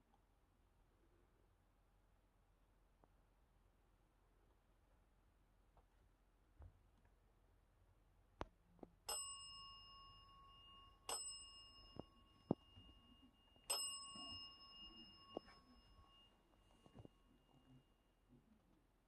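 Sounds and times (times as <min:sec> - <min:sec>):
small metal bell ringing: 0:09.1 - 0:18.1.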